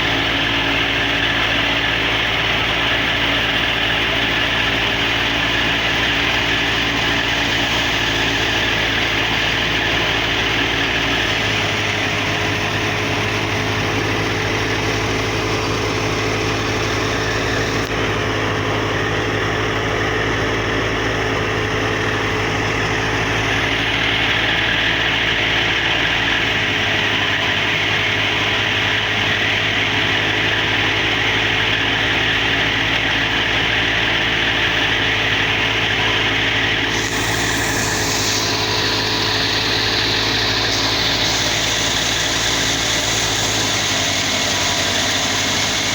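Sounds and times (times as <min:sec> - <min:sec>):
wheat thresher running: 0:00.0 - 0:45.9.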